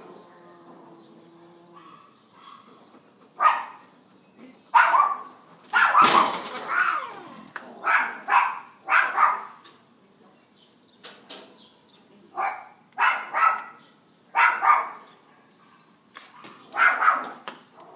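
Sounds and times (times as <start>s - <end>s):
animal calls: 4.8s - 9.5s.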